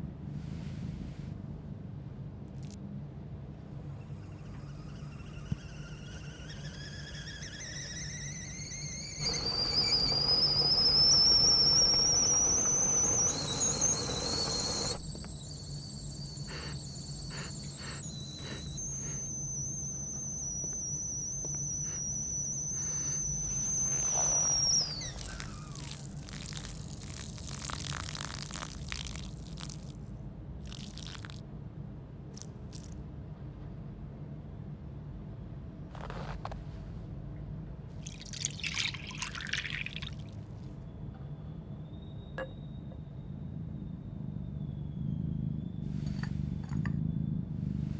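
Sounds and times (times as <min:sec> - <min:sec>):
high whistling tone: 0:04.0 - 0:30.0, 0:38.0 - 0:47.9
hiss: 0:06.7 - 0:30.0
scattered crackling: 0:09.1 - 0:30.0.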